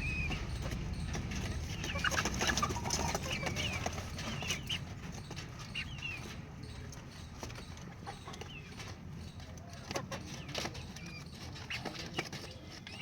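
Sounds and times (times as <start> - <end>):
low rumble: 0.0 - 2.9
chicks peeping: 0.0 - 13.0.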